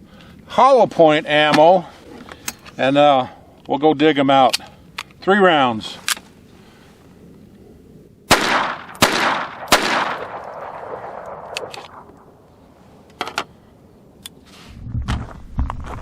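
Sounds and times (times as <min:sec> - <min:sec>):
pistol shots with echo: 0:08.3 - 0:12.3.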